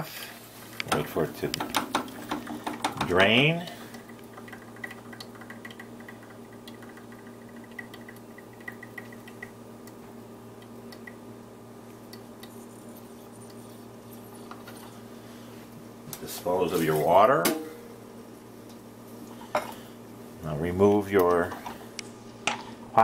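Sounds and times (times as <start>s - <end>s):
steady low hum: 0.0s - 23.0s
water dripping into a glass: 4.4s - 9.6s.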